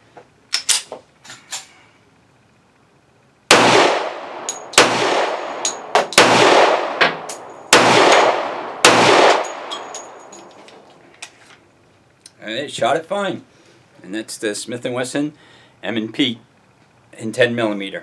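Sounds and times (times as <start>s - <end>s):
pistol shots: 3.5s - 10.3s
light metallic clinks: 4.5s - 4.8s, 5.5s - 6.0s, 9.4s - 11.4s
gun handling clicks: 7.0s - 7.5s.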